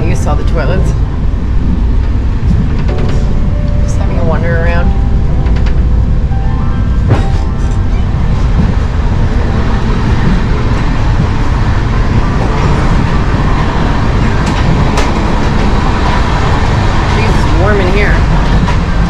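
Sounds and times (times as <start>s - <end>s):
train wheels rumbling on track: 0.0s - 19.0s
sharp knocks: 2.5s - 3.6s.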